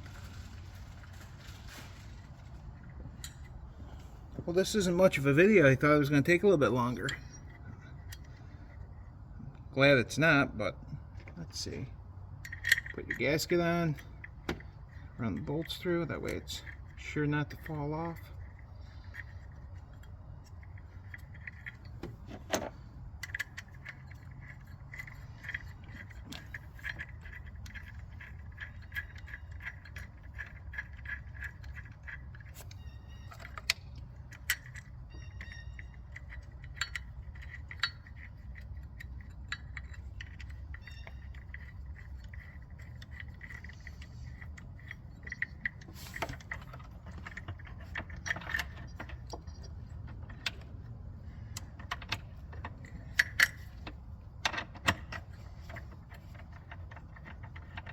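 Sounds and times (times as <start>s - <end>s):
steady low hum: 0.0s - 57.9s
tools and bolts clinking: 0.1s - 57.9s
ratchet wrench clicking: 23.1s - 46.2s.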